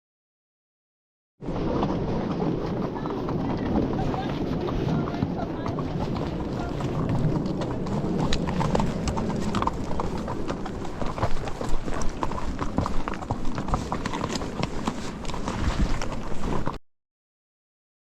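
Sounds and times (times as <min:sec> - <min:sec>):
horse hooves clip-clopping: 0:01.4 - 0:16.8
low steady rumble: 0:02.0 - 0:13.9.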